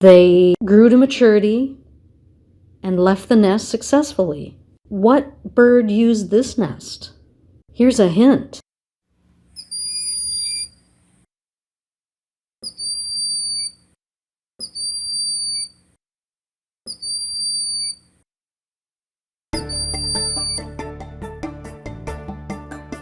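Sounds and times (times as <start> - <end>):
high thin bird whistle: 9.6 - 10.8, 12.6 - 13.8, 14.6 - 15.8, 16.9 - 18.1, 19.6 - 20.8.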